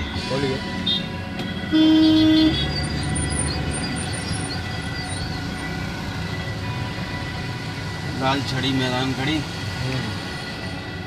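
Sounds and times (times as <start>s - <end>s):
traffic rumble: 0.0s - 11.0s
vehicle horn blast: 1.7s - 2.7s.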